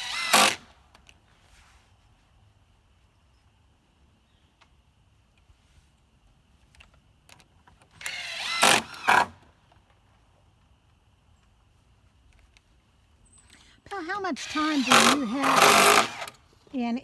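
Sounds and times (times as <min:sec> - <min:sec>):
power drill driving screw into wood: 0:00.0 - 0:00.7, 0:08.0 - 0:09.4, 0:13.9 - 0:16.4.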